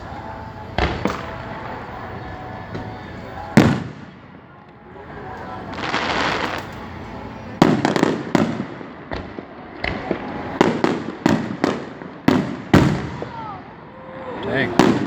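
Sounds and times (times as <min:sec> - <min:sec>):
firework booms: 0:00.7 - 0:04.4, 0:05.7 - 0:06.9, 0:07.6 - 0:13.9, 0:14.6 - 0:15.0
firework rushing hiss: 0:05.1 - 0:15.0.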